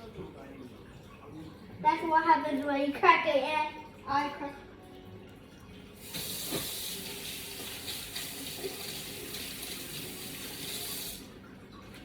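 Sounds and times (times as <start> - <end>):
tap water running into sink: 6.0 - 12.0.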